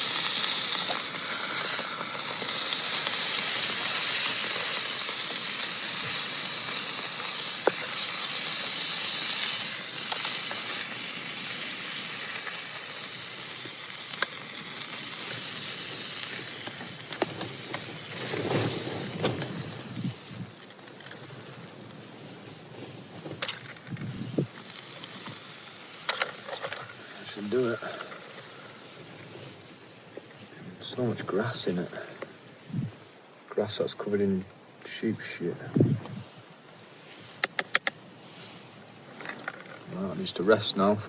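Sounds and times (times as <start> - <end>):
food sizzling in a pan: 0.0 - 19.0, 24.2 - 30.5.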